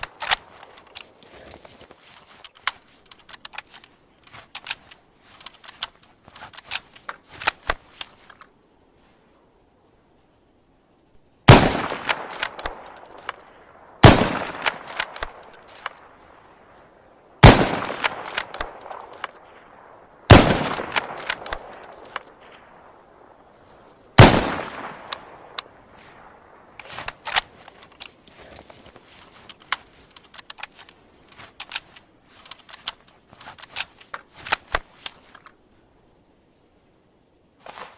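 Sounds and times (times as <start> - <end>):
rifle bolt clicks: 0.0 - 8.5, 11.8 - 13.4, 14.1 - 16.1, 17.5 - 19.4, 20.4 - 22.3, 24.2 - 25.7, 26.8 - 35.6
rifle shots echoing: 11.5 - 13.4, 14.0 - 16.0, 17.4 - 19.3, 20.3 - 22.7, 24.2 - 25.8.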